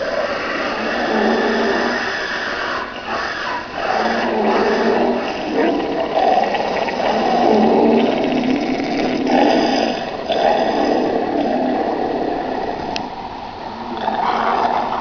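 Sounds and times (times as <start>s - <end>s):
rough grating noise through speaker: 0.0s - 15.0s.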